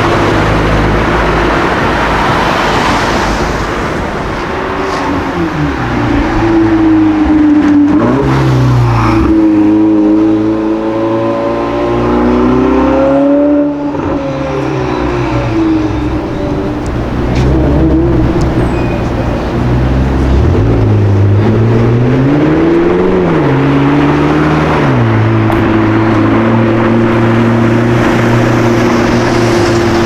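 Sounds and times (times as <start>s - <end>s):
car engine revving: 0.0s - 30.0s.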